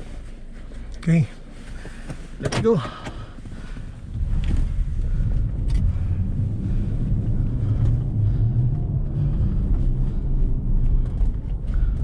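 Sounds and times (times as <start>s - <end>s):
low rumble: 3.1s - 12.0s.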